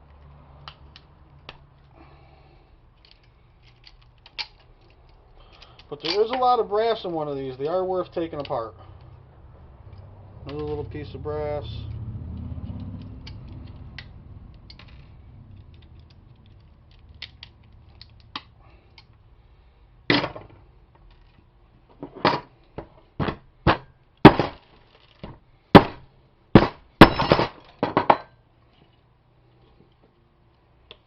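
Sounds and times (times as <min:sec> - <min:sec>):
faint clicks of pieces handled: 0:00.0 - 0:06.5, 0:12.3 - 0:19.3, 0:20.9 - 0:21.9, 0:28.6 - 0:31.0.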